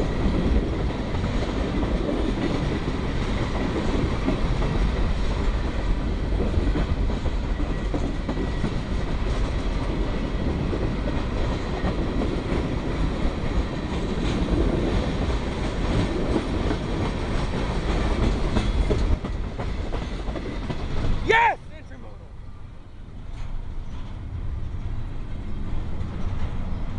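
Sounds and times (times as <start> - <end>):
wheels clacking over rail joints: 0.0 - 21.2
freight train rumble: 0.0 - 26.9.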